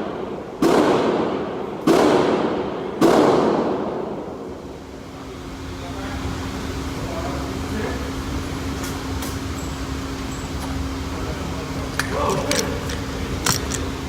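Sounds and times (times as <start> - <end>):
gunshots with echo: 0.6 - 4.2.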